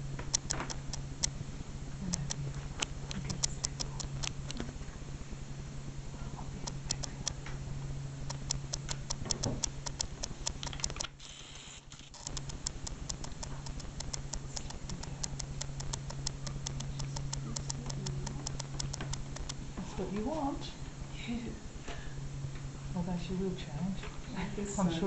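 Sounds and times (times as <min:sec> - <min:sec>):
low electrical hum: 0:00.0 - 0:25.0
keyboard tapping: 0:00.2 - 0:01.0, 0:02.1 - 0:04.7, 0:08.3 - 0:11.2, 0:12.2 - 0:19.6.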